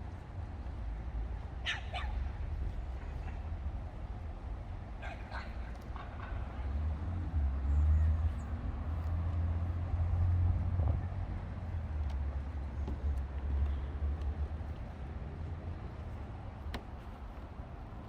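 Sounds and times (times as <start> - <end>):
dog yipping: 1.6 - 2.2.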